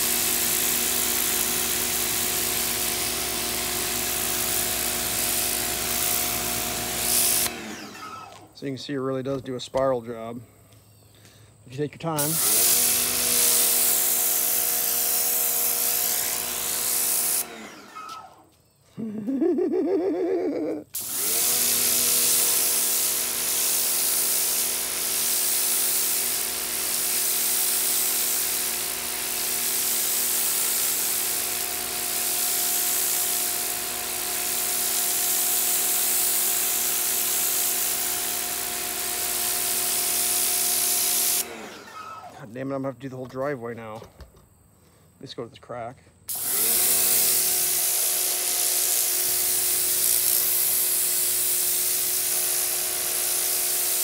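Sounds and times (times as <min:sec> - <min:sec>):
water jet hissing on concrete: 0:00.0 - 0:07.5, 0:12.1 - 0:17.5, 0:20.9 - 0:41.4, 0:46.3 - 0:54.0
pressure washer motor hum: 0:00.0 - 0:09.9, 0:12.0 - 0:18.5, 0:20.6 - 0:42.5, 0:46.3 - 0:54.0.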